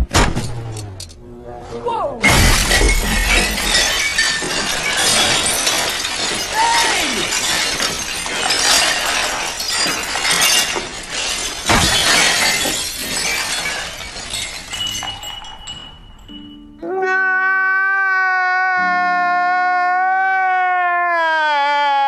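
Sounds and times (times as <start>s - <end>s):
glassware and crockery shattering: 2.2s - 16.5s.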